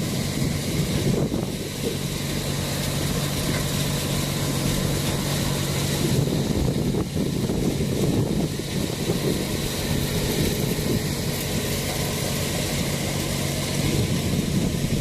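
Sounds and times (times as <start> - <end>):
low engine hum: 0.0 - 15.0
thresher rushing noise: 0.0 - 15.0.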